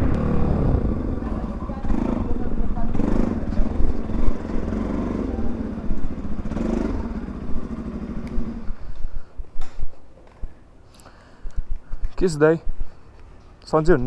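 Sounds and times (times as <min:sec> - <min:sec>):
motorcycle engine running: 0:00.0 - 0:09.4.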